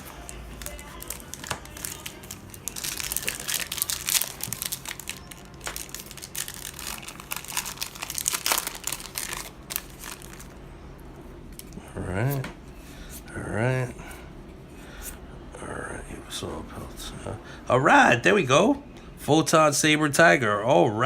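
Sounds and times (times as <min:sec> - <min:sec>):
foil wrapper crinkling and tearing: 0:00.0 - 0:10.5.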